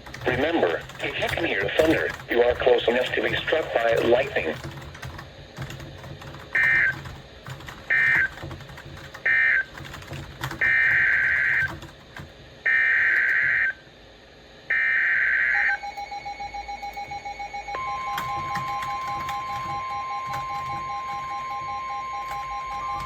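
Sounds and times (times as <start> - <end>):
steady warning alarm tone: 0.0 - 23.0
screeching digital data bursts: 0.2 - 4.6, 6.5 - 7.1, 7.9 - 8.4, 10.6 - 11.8, 14.7 - 23.0
rapid pulsing beep: 0.2 - 4.8, 6.5 - 7.1, 7.9 - 8.4, 14.8 - 23.0.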